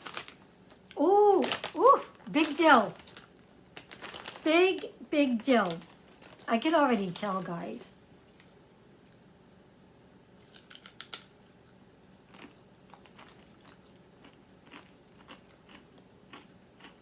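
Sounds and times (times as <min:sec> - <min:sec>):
potato chips crunching: 0:00.0 - 0:04.8, 0:10.4 - 0:11.3, 0:12.2 - 0:17.0.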